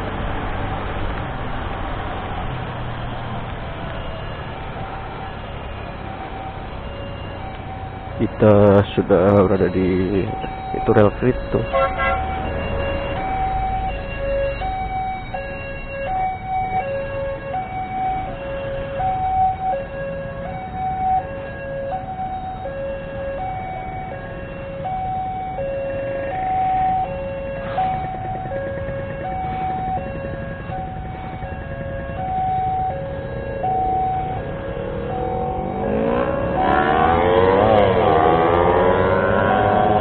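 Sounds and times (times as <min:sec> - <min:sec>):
road traffic rumble: 0:00.0 - 0:40.0
two-tone crossing alarm: 0:03.6 - 0:40.0
motorcycle engine: 0:26.3 - 0:40.0.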